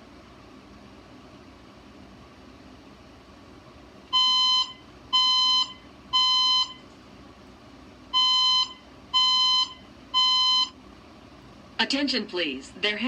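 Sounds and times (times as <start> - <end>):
fire alarm evacuation beeps: 4.1 - 6.8, 8.1 - 10.8.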